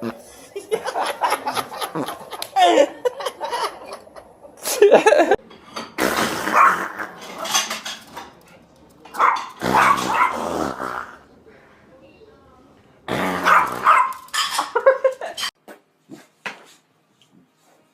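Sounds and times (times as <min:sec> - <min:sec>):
dishes and cutlery clattering: 0:05.4 - 0:06.0, 0:07.2 - 0:09.6, 0:14.1 - 0:15.6
dog noises: 0:08.5 - 0:11.0, 0:13.4 - 0:14.4.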